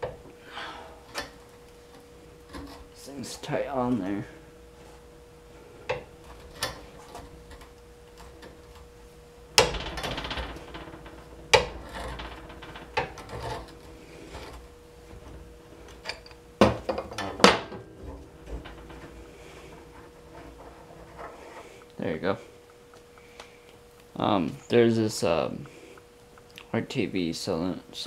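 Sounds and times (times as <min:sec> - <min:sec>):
metal clanks and knocks: 0:09.5 - 0:23.1
wrench scraping metal: 0:11.3 - 0:14.7, 0:17.2 - 0:21.9.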